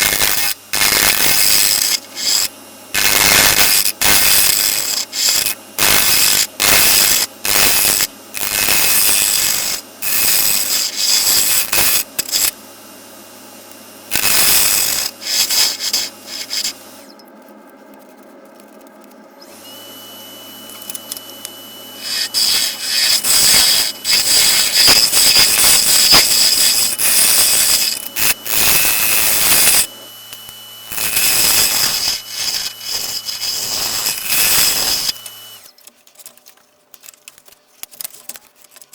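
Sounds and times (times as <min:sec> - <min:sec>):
lathe motor whining: 0:00.0 - 0:07.3, 0:14.1 - 0:17.1, 0:19.5 - 0:35.7
gouge rasping wood on lathe: 0:22.0 - 0:29.9, 0:31.0 - 0:35.2.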